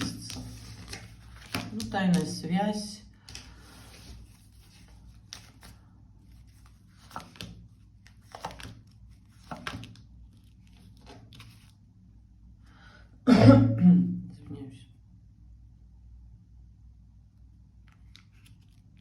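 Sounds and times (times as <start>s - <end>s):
cards rustling and sliding: 0.0s - 2.5s, 3.2s - 11.8s, 17.8s - 19.0s.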